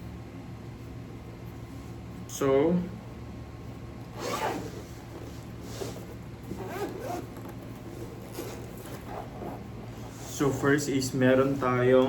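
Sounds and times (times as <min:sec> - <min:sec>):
zipper being pulled open: 0:04.2 - 0:10.3.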